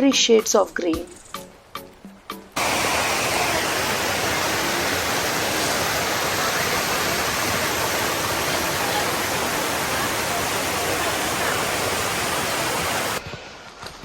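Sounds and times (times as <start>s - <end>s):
waterfall pouring: 2.6s - 13.2s.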